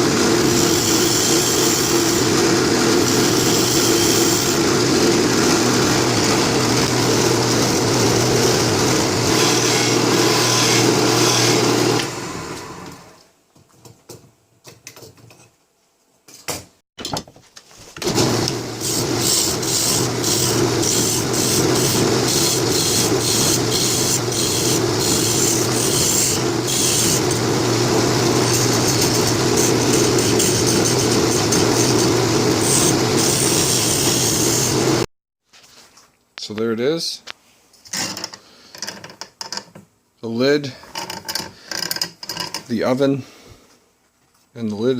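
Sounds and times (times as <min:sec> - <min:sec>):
wood lathe running: 0:00.0 - 0:13.1, 0:18.0 - 0:35.1.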